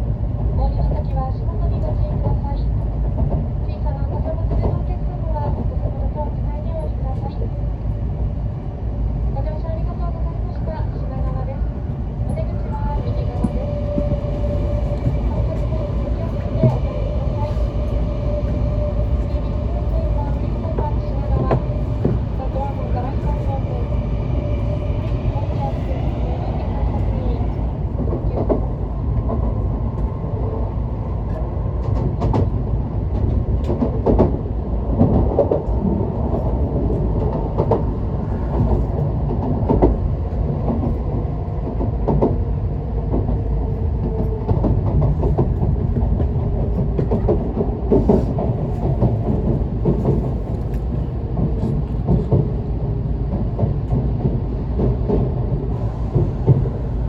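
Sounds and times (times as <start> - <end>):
train wheels rumbling: 0.0 - 57.0.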